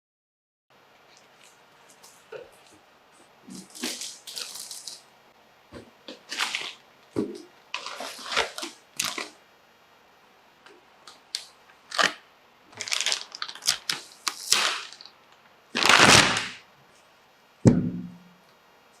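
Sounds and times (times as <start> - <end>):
packaging clicks and rustles: 3.5 - 5.1, 6.1 - 6.8, 7.7 - 9.4, 11.1 - 15.2
loud rasp of packaging: 15.8 - 16.6.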